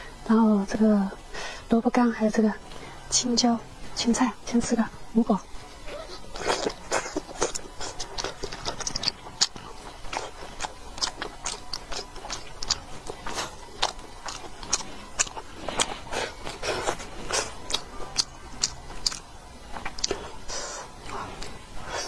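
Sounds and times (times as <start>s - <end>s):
person chewing wetly: 5.7s - 22.0s.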